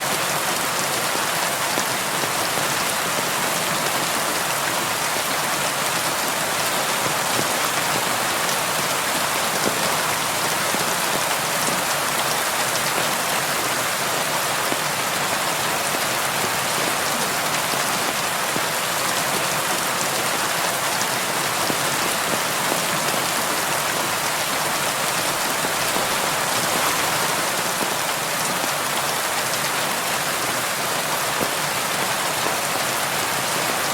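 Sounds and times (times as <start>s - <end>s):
heavy rain falling: 0.0s - 33.9s.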